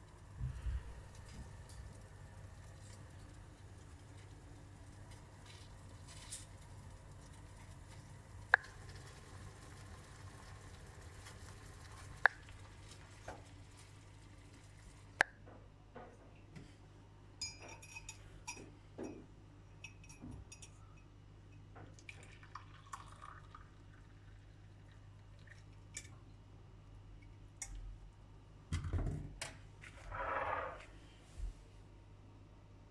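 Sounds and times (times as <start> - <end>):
glass clinking: 17.4 - 19.2, 19.8 - 21.1
kitchenware clatter: 17.4 - 20.9.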